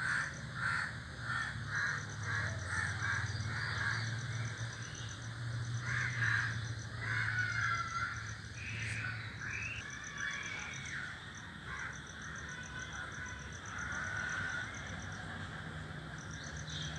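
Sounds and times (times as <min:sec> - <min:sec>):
crows cawing: 0:00.0 - 0:04.0, 0:05.8 - 0:08.3, 0:13.6 - 0:15.0.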